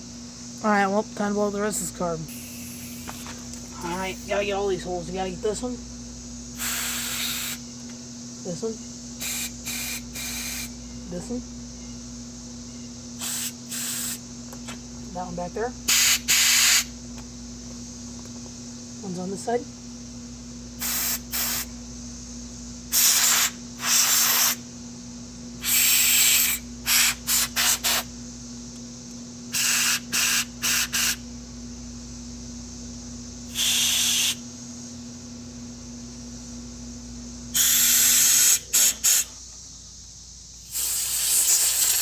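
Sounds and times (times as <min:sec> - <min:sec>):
compressed air blasts: 0:02.3 - 0:04.3, 0:06.6 - 0:07.6, 0:09.2 - 0:10.8, 0:13.2 - 0:14.2, 0:15.9 - 0:17.0, 0:20.8 - 0:21.7, 0:22.9 - 0:24.6, 0:25.6 - 0:28.1, 0:29.5 - 0:31.2, 0:33.5 - 0:34.4, 0:37.5 - 0:39.4, 0:40.6 - 0:42.0.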